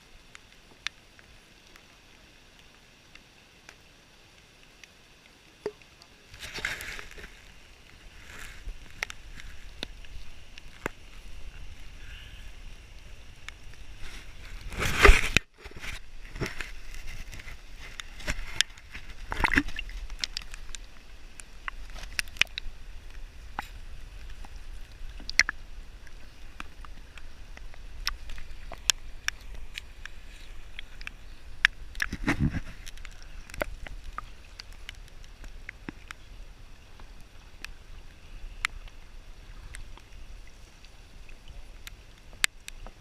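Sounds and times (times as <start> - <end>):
paddle splash: 5.6 - 36.1
water sloshing around paddle: 13.5 - 20.9.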